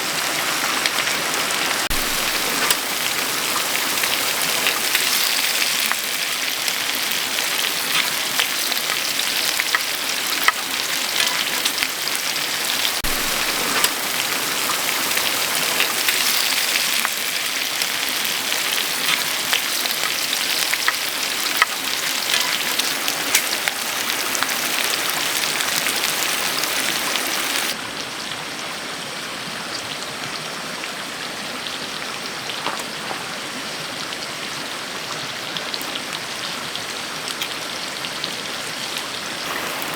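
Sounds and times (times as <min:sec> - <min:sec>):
water pattering: 0:00.7 - 0:18.0.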